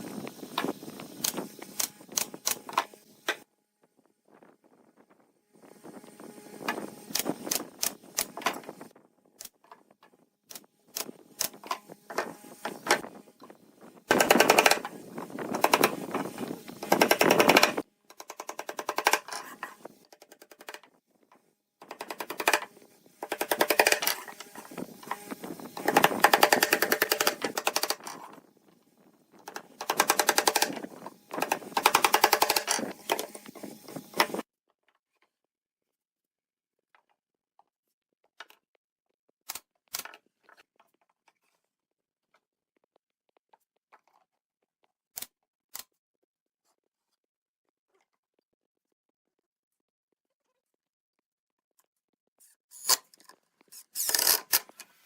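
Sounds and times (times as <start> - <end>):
power tool rattling: 14.1 - 20.8, 21.8 - 28.3, 29.4 - 34.4, 53.9 - 54.8.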